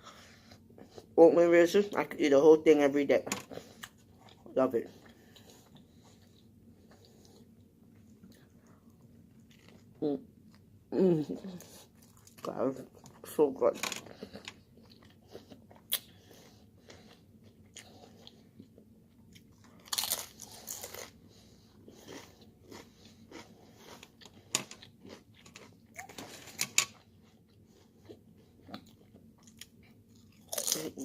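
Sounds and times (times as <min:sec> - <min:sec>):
person chewing food: 0:03.5 - 0:10.7, 0:11.4 - 0:13.3, 0:14.0 - 0:31.0
crunchy bites: 0:19.7 - 0:21.2.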